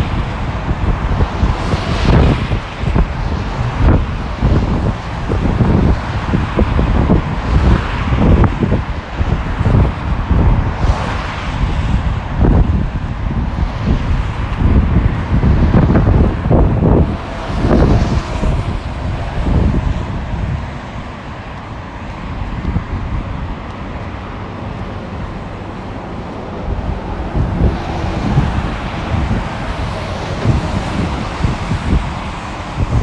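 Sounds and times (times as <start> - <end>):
road traffic noise: 0.0 - 33.0
wind buffeting microphone: 0.0 - 33.0
vehicle passing: 10.7 - 21.9, 22.6 - 33.0.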